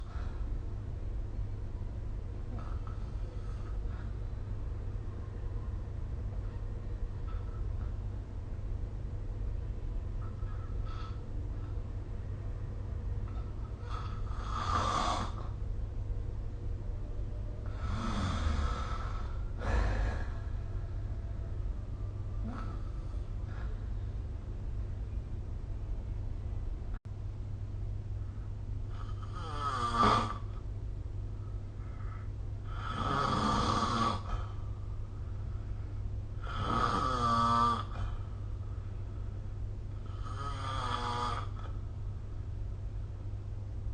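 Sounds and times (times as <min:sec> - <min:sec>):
steady low hum: 0:00.0 - 0:43.9
person snoring: 0:13.8 - 0:15.4, 0:17.7 - 0:20.5, 0:28.9 - 0:30.4, 0:32.7 - 0:34.6, 0:36.4 - 0:38.1, 0:40.0 - 0:41.7.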